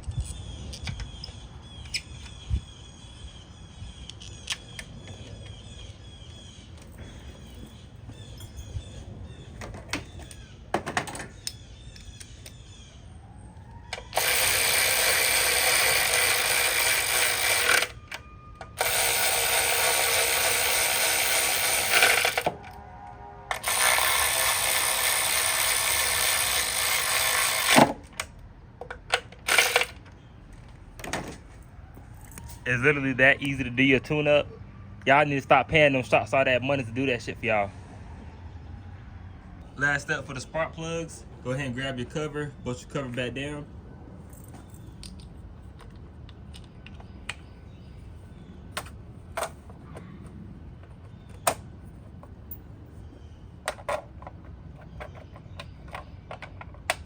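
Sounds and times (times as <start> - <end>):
power tool running: 14.1 - 18.0, 18.8 - 22.5, 23.5 - 28.0, 29.5 - 29.9.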